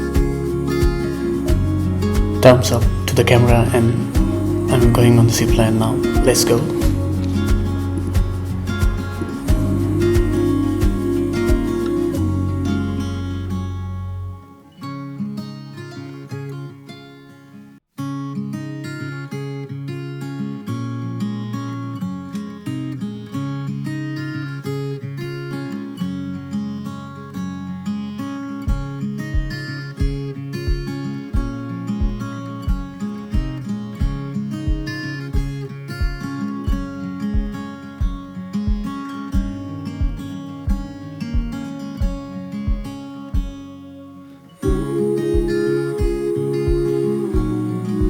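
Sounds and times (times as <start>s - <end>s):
steady low beat: 0.0s - 14.1s, 29.4s - 43.7s, 44.6s - 48.0s
strummed acoustic guitar: 0.0s - 48.0s.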